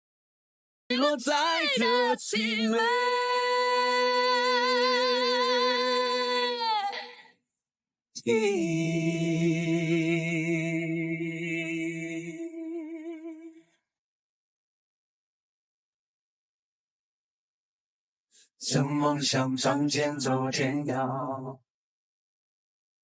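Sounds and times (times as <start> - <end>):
person singing with vibrato: 0.9 - 7.2, 8.2 - 13.6.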